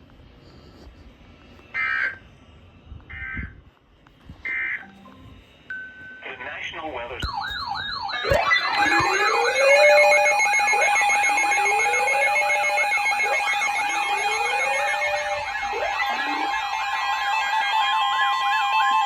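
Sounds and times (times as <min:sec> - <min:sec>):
steady alarm tone: 0:07.0 - 0:19.0
warbling alarm tone: 0:07.2 - 0:19.0
low tone sweeping upward: 0:07.7 - 0:19.0.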